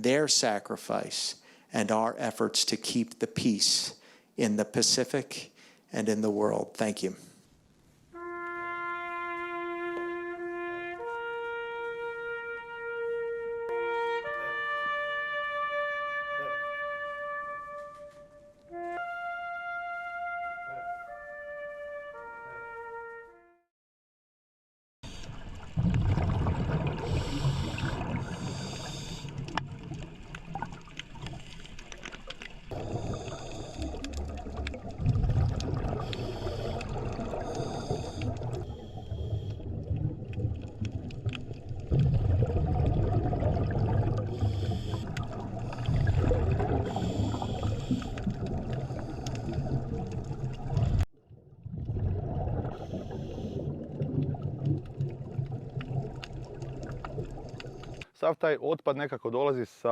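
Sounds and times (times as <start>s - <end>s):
short hissing breaths: 5.6s - 5.9s, 27.0s - 29.4s, 32.8s - 34.1s, 36.0s - 39.6s, 44.4s - 46.1s, 46.9s - 48.2s, 48.8s - 49.8s
low rumble of water: 25.0s - 58.1s
bubbling exhalations underwater: 25.2s - 32.0s, 32.7s - 58.0s.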